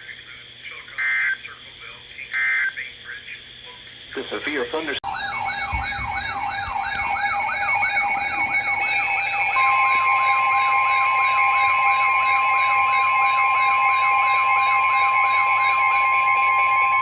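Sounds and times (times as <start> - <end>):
electronic siren wailing: 5.0 - 17.0
steady alert tone: 5.0 - 17.0.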